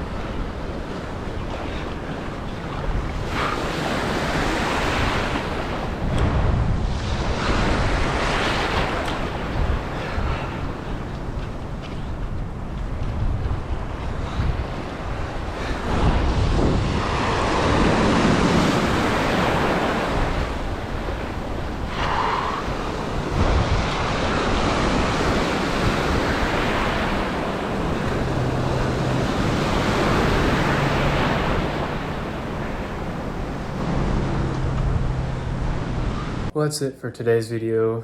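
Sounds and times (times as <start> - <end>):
wind buffeting microphone: 0.0 - 36.5
waves washing in and out: 0.0 - 36.6
low steady hum: 31.8 - 36.8.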